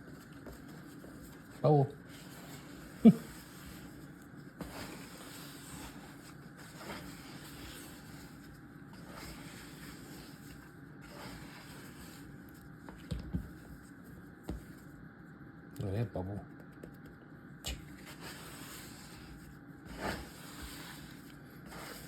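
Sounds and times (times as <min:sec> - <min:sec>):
hands shaping sticky dough: 0:00.0 - 0:15.0.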